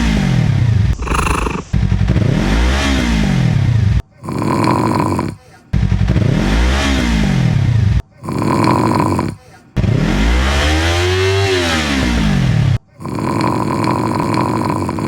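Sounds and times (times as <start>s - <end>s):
motorcycle engine revving: 0.0s - 4.0s, 5.8s - 9.1s, 9.8s - 15.0s
snoring: 0.9s - 1.8s, 4.1s - 5.5s, 8.1s - 9.4s, 12.8s - 15.0s.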